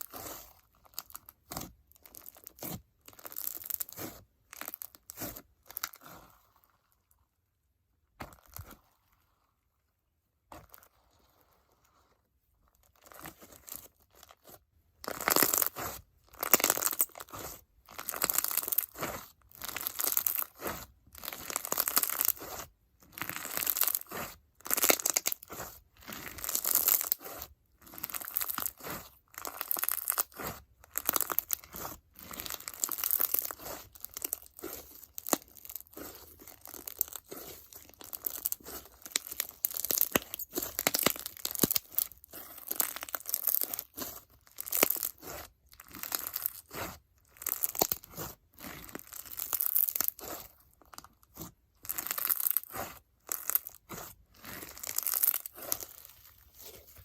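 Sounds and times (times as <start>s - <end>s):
slime crackling and popping: 15.1s - 57.0s.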